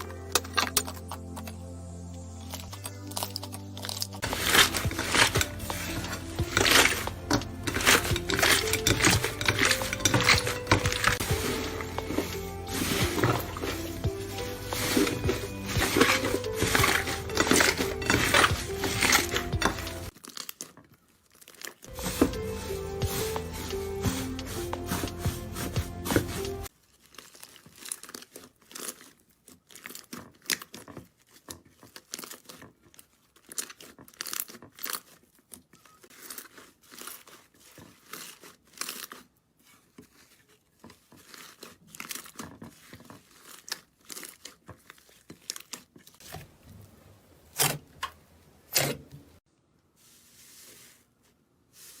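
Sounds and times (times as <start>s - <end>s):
music: 0.0s - 20.1s, 21.9s - 26.7s
slime crackling and popping: 12.1s - 21.9s, 26.6s - 46.2s.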